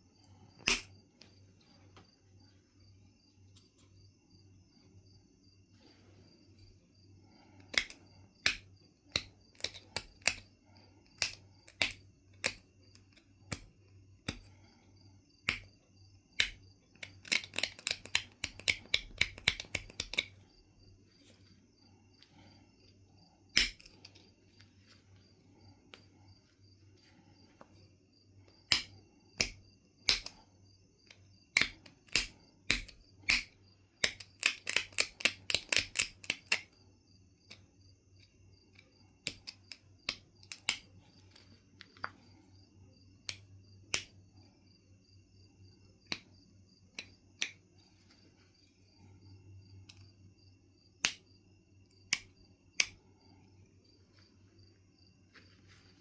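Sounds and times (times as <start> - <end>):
flint knapping clicks: 0.6 - 0.9, 7.4 - 10.5, 11.1 - 14.6, 15.4 - 15.8, 16.4 - 20.4, 23.5 - 24.7, 28.5 - 30.4, 31.0 - 36.8, 38.7 - 42.2, 43.2 - 44.2, 46.0 - 46.3, 46.9 - 47.6, 51.0 - 51.3, 52.1 - 53.0.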